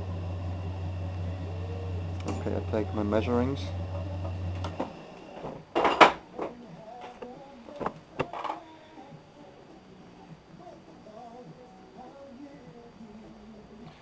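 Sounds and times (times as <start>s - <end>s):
lathe motor hum: 0.0s - 5.6s.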